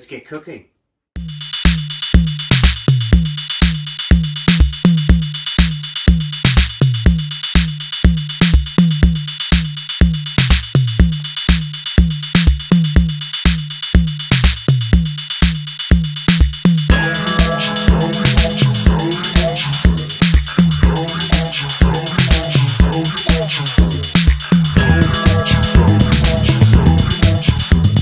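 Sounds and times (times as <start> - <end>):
electronic dance music: 16.3 - 28.0.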